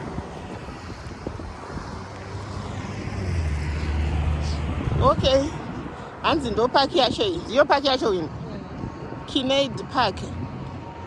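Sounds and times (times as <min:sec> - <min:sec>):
vehicle engine rumble passing: 0:00.0 - 0:07.4
wind on microphone: 0:00.0 - 0:11.0.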